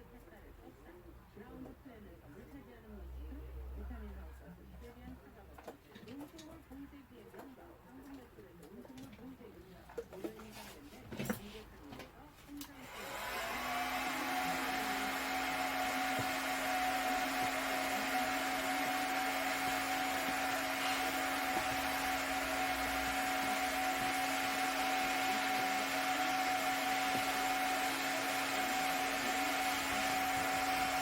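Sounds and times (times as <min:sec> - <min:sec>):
small electric motor whining: 0:12.9 - 0:31.0.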